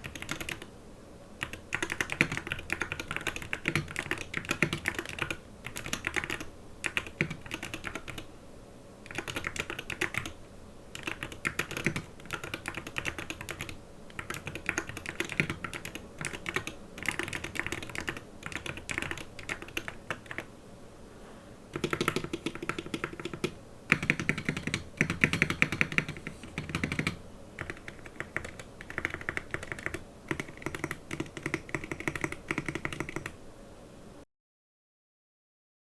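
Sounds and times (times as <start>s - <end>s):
mechanical keyboard typing: 0.0s - 0.7s, 1.4s - 8.3s, 9.1s - 20.5s, 21.8s - 33.4s.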